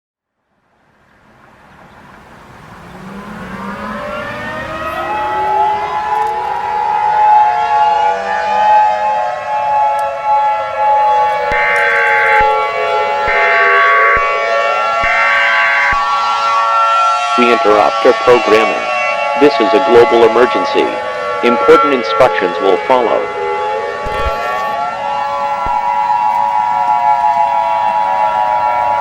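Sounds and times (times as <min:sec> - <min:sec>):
civil defense sirens wailing: 0:00.6 - 0:29.0
screeching digital data bursts: 0:24.1 - 0:24.8.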